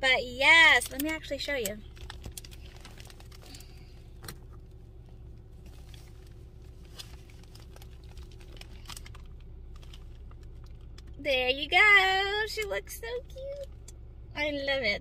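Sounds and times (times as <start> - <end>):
car interior hum: 0.0 - 15.0
faint clicks and rustles: 0.6 - 11.2.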